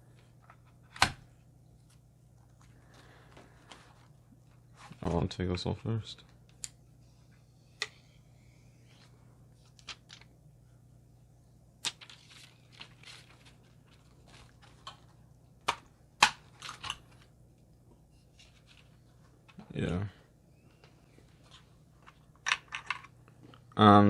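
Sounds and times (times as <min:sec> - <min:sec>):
plastic film crinkling: 0:12.0 - 0:15.0.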